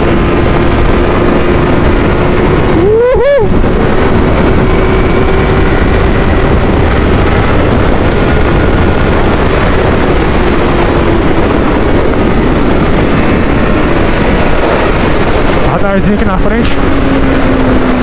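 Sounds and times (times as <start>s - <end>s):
motorcycle engine: 0.0s - 18.0s
wind noise on microphone: 0.0s - 18.0s.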